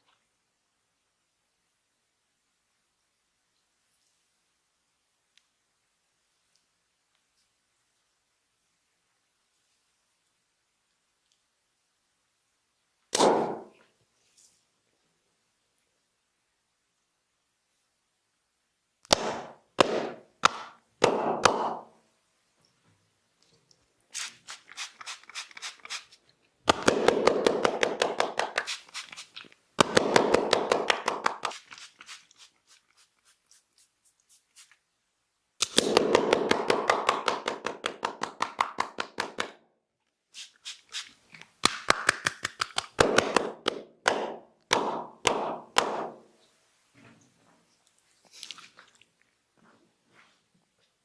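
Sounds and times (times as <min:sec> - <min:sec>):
rapid slaps on skin: 0:19.1 - 0:21.9, 0:26.7 - 0:29.2, 0:29.8 - 0:31.9, 0:35.6 - 0:39.6, 0:41.6 - 0:46.2.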